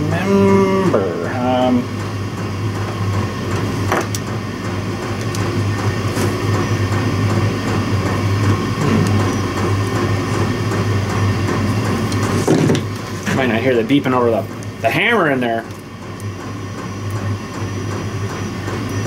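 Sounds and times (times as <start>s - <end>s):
machine humming drone: 0.0s - 19.0s.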